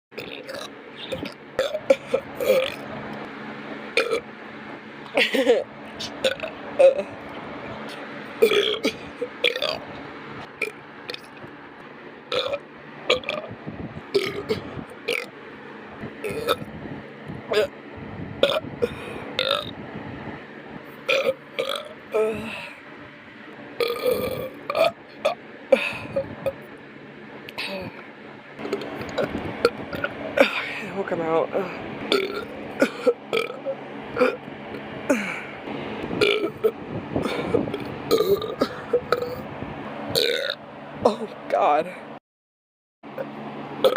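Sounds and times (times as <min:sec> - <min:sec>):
person burping: 0:00.2 - 0:02.8, 0:04.0 - 0:04.2, 0:05.2 - 0:07.1, 0:08.4 - 0:09.8, 0:12.3 - 0:13.5, 0:14.2 - 0:15.3, 0:16.2 - 0:16.7, 0:17.5 - 0:17.7, 0:18.4 - 0:19.7, 0:21.1 - 0:22.6, 0:23.8 - 0:26.6, 0:32.1 - 0:34.4, 0:36.2 - 0:39.4, 0:40.2 - 0:41.3.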